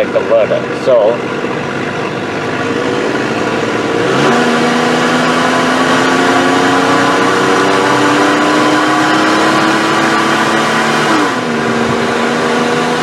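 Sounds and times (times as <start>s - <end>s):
truck engine accelerating: 0.0s - 13.0s.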